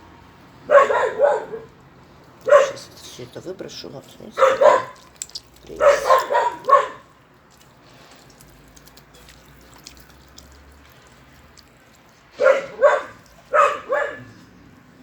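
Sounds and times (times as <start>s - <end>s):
dog barking: 0.6s - 1.8s, 2.4s - 2.9s, 4.4s - 5.1s, 5.7s - 7.1s, 12.4s - 14.4s.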